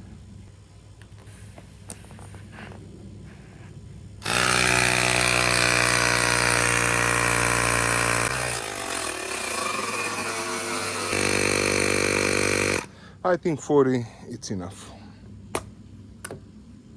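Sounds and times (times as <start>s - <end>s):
electric air compressor running: 4.2s - 12.9s.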